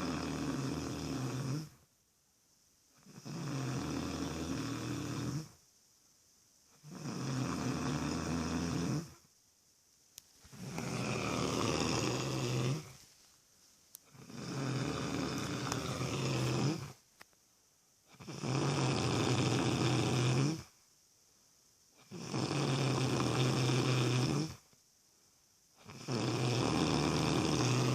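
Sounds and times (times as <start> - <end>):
loud low snoring: 0.0 - 1.8, 3.0 - 5.6, 6.8 - 9.2, 10.5 - 13.0, 14.1 - 17.0, 18.1 - 20.7, 22.0 - 24.6, 25.8 - 27.9.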